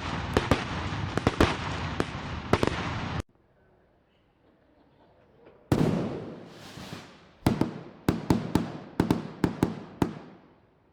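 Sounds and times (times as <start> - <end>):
firework cracking bangs: 0.0 - 3.3, 5.7 - 10.6
loud firework bang: 5.7 - 10.2
firework rising hiss: 6.0 - 7.5.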